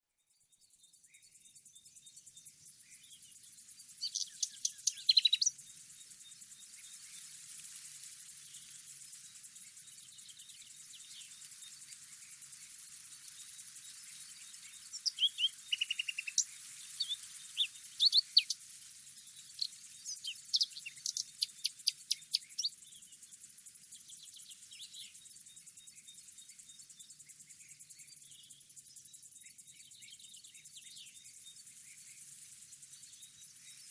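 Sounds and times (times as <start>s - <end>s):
high-pitched insect trill: 0.1s - 33.9s
birds singing and chirping: 0.4s - 7.6s, 8.3s - 33.9s.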